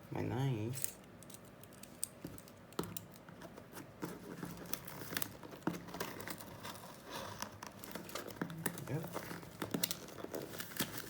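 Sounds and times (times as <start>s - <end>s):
wrapping crinkling: 4.2s - 11.0s
knife cutting open package: 4.6s - 11.0s.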